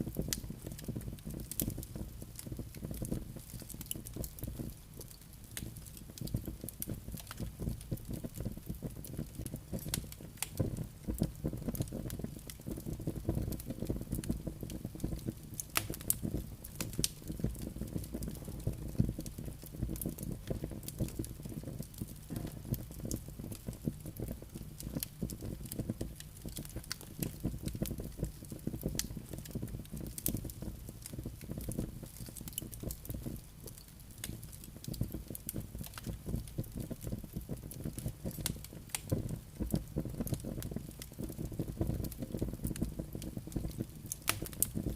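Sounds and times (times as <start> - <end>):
logs crackling and popping: 0.0 - 44.9
rumble of flames: 0.0 - 44.9.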